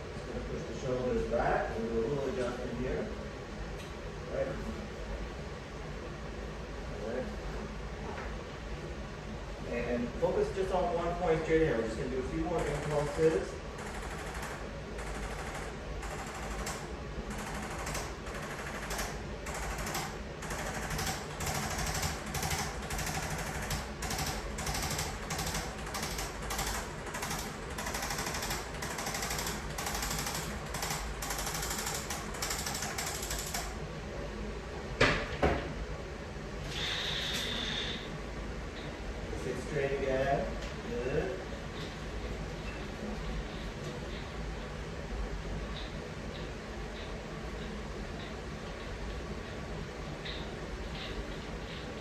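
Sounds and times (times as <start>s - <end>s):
sharp mechanical clicks: 12.5s - 33.8s.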